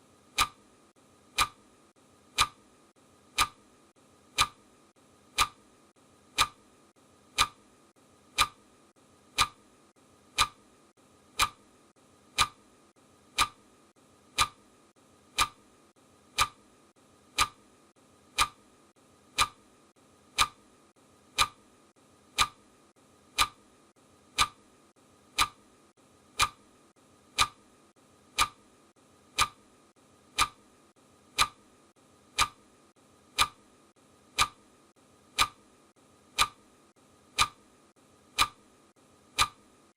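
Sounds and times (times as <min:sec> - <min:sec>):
clock ticking: 0:00.3 - 0:00.7, 0:01.3 - 0:01.7, 0:02.3 - 0:02.7, 0:03.3 - 0:03.7, 0:04.3 - 0:04.7, 0:05.3 - 0:05.7, 0:06.3 - 0:06.7, 0:07.3 - 0:07.7, 0:08.3 - 0:08.7, 0:09.3 - 0:09.7, 0:10.3 - 0:10.7, 0:11.3 - 0:11.7, 0:12.3 - 0:12.7, 0:13.3 - 0:14.7, 0:15.3 - 0:15.7, 0:16.3 - 0:17.7, 0:18.3 - 0:18.7, 0:19.3 - 0:19.7, 0:20.3 - 0:20.7, 0:21.3 - 0:21.7, 0:22.3 - 0:25.7, 0:26.3 - 0:26.7, 0:27.3 - 0:27.7, 0:28.3 - 0:28.7, 0:29.3 - 0:29.7, 0:30.3 - 0:30.7, 0:31.3 - 0:31.7, 0:32.3 - 0:32.7, 0:33.3 - 0:33.7, 0:34.3 - 0:34.7, 0:35.3 - 0:35.7, 0:36.3 - 0:36.7, 0:37.3 - 0:37.7, 0:38.3 - 0:38.7, 0:39.3 - 0:39.9.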